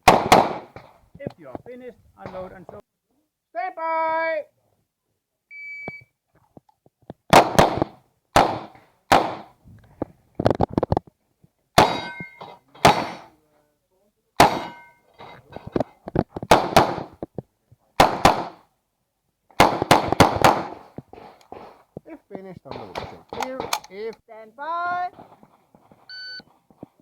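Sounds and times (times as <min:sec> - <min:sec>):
pistol shots: 0:00.0 - 0:00.9, 0:07.3 - 0:09.6, 0:11.8 - 0:13.3, 0:14.4 - 0:14.9, 0:16.5 - 0:17.1, 0:18.0 - 0:18.6, 0:19.6 - 0:20.9
steel targets ringing: 0:11.8 - 0:12.5, 0:14.4 - 0:15.1.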